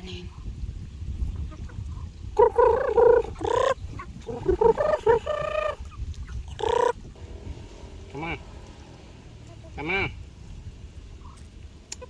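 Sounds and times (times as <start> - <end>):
ducks quacking: 2.4 - 7.0.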